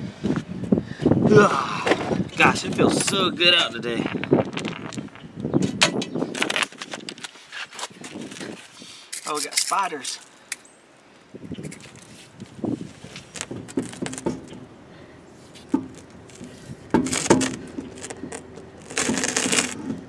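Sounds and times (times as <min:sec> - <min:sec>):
loose nuts jangling: 0:06.0 - 0:06.9.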